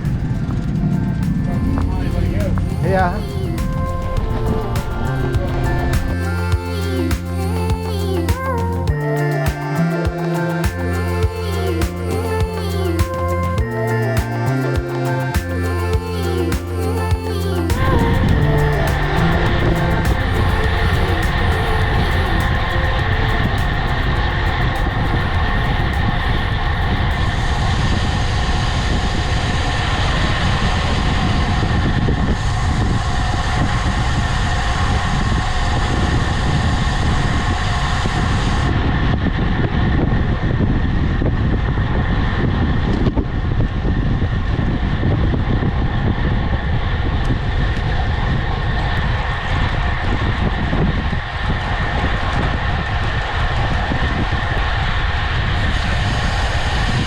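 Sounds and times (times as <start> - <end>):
constant tones: 0.0 - 29.6
wind and road noise rumble: 0.0 - 57.0.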